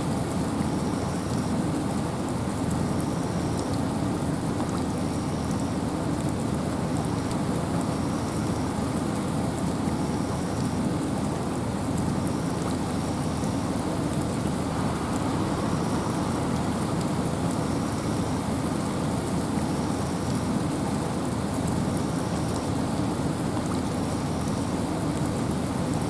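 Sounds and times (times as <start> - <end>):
raindrops pattering: 0.0 - 26.0
wind rushing: 14.4 - 19.1.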